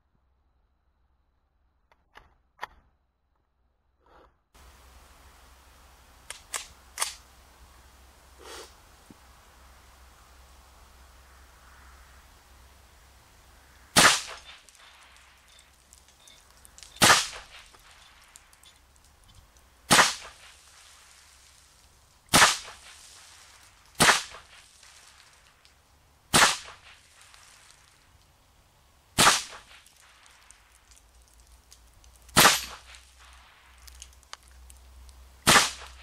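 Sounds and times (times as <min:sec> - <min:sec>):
rifle shots with echo: 0:14.0 - 0:15.6, 0:17.0 - 0:18.0, 0:19.9 - 0:20.4, 0:22.3 - 0:22.8, 0:24.0 - 0:24.5, 0:26.3 - 0:26.9, 0:29.2 - 0:29.7, 0:32.4 - 0:32.9, 0:35.5 - 0:36.0.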